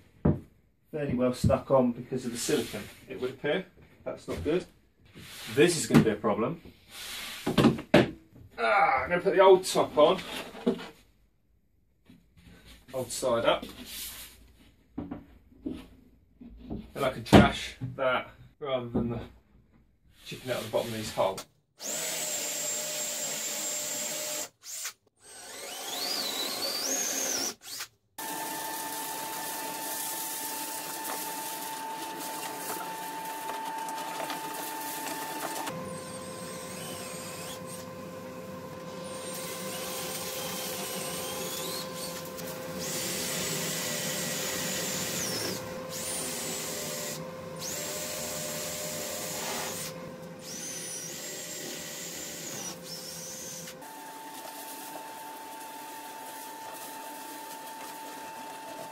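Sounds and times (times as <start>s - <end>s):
electric drill boring through wood: 21.8s - 58.9s.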